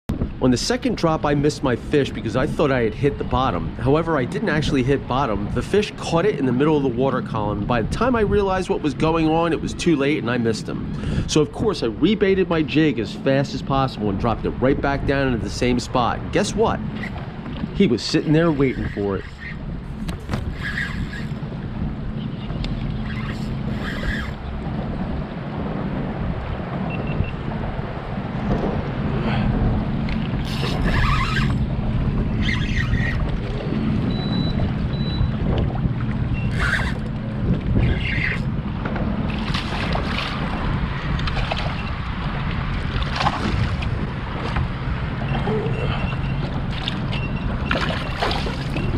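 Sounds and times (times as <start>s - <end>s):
wind buffeting microphone: 0.1s - 48.9s
lapping water: 39.3s - 48.9s.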